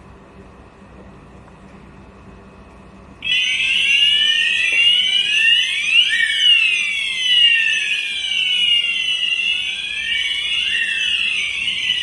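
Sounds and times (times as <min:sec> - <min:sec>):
fire alarm sounders sweeping tones: 0:03.2 - 0:12.0.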